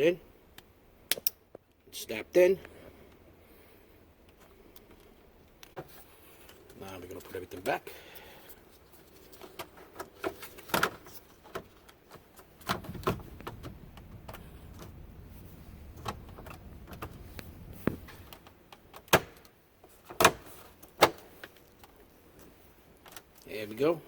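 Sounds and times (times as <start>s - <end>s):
plastic trim clicks and snaps: 0.6s - 1.4s.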